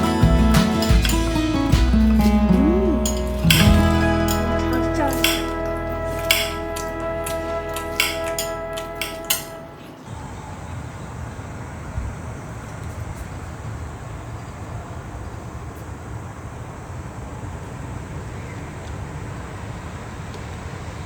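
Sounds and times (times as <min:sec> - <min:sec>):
sharp clinks: 0:00.0 - 0:09.6
background music: 0:00.0 - 0:10.0
low outdoor rumble: 0:00.0 - 0:12.4.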